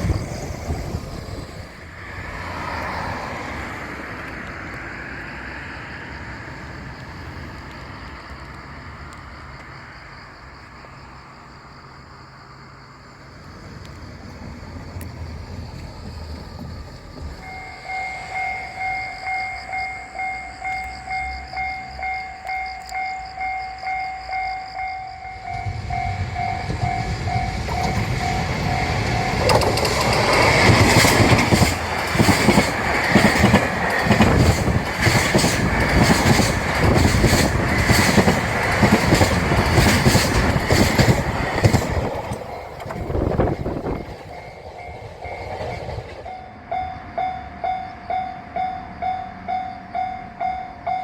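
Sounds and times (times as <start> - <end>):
train rumbling past: 0.0 - 51.0
level crossing warning bell: 17.4 - 31.3, 41.7 - 51.0
wheels clattering over rail joints: 25.5 - 48.2.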